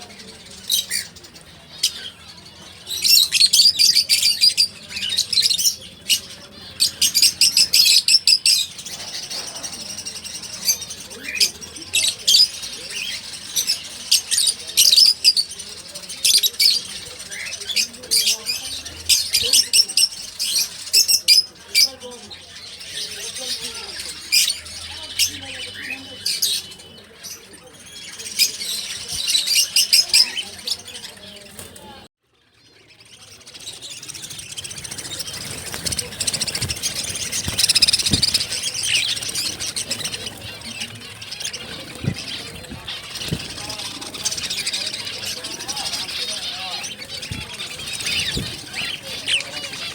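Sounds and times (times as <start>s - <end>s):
small birds chirping and squawking: 0.0s - 49.9s.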